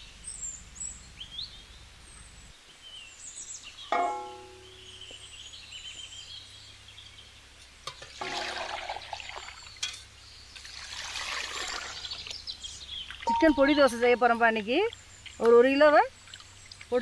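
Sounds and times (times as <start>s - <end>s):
water trickling and pouring: 8.0s - 10.0s, 10.6s - 13.9s, 16.0s - 17.0s
faint high chirps: 13.0s - 14.4s.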